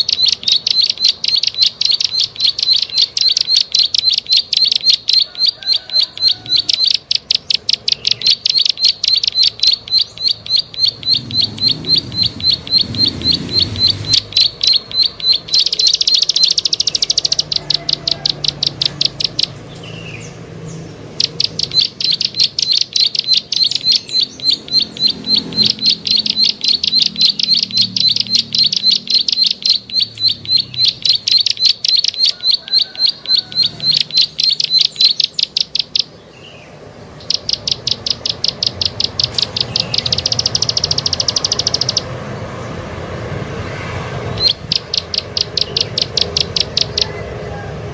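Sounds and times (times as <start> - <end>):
bird clicking notes: 0.0 - 20.0, 21.1 - 36.1, 37.2 - 42.1, 44.4 - 47.2.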